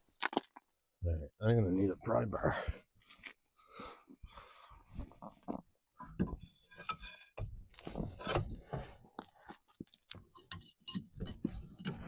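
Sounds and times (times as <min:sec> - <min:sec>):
pry bar scraping metal: 0:08.0 - 0:08.6, 0:10.3 - 0:12.0
metal clinking and knocking: 0:10.2 - 0:12.0.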